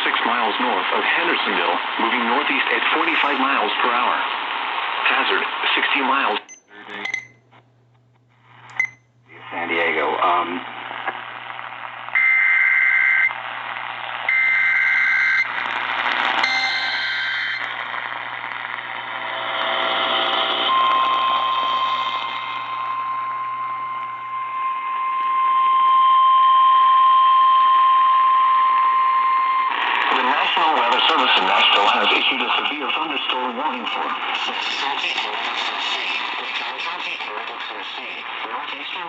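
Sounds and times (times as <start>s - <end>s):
radio static: 0.0s - 7.1s, 8.4s - 25.3s, 27.6s - 39.0s
steady warning alarm tone: 16.4s - 17.7s, 19.8s - 29.8s.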